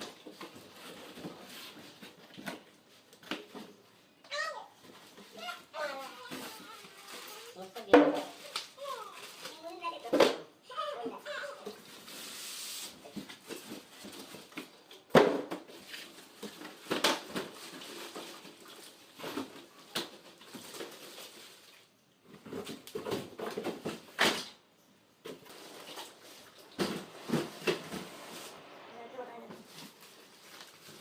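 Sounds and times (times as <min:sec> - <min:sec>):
objects knocking and thumping: 0:04.8 - 0:08.5, 0:10.0 - 0:10.5, 0:13.1 - 0:21.3, 0:22.2 - 0:24.5, 0:25.2 - 0:28.6.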